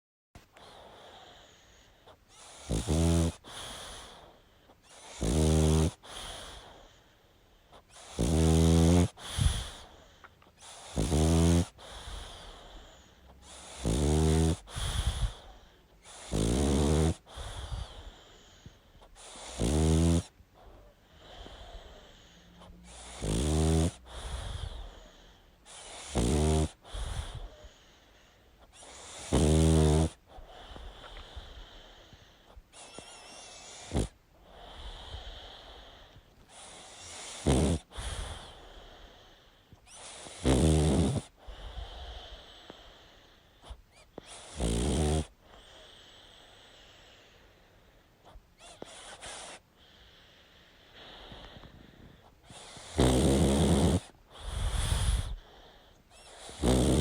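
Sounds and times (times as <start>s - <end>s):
quiet breathing: 0.4s - 57.0s
dog snoring loudly: 2.3s - 6.9s, 7.9s - 18.6s, 19.2s - 27.9s, 28.7s - 32.0s, 32.7s - 47.2s, 48.6s - 50.2s, 51.0s - 57.0s.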